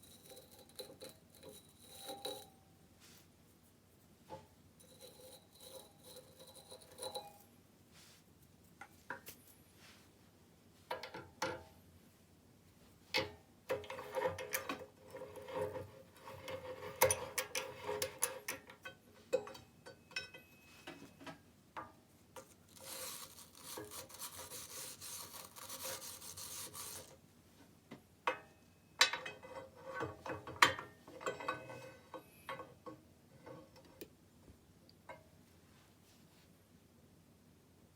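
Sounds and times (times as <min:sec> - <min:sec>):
metal scraping and rubbing: 0:00.0 - 0:02.6, 0:04.8 - 0:07.5, 0:22.4 - 0:27.2.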